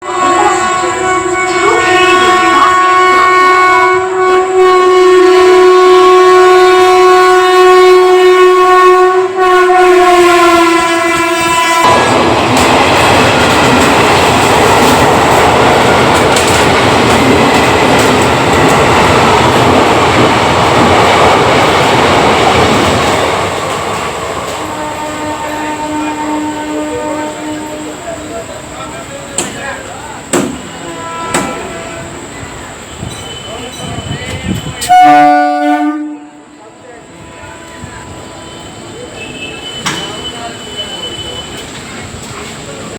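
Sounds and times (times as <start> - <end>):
train horn blast: 0.0 - 12.3, 24.5 - 28.5, 30.4 - 41.8
train running noise: 0.0 - 42.9.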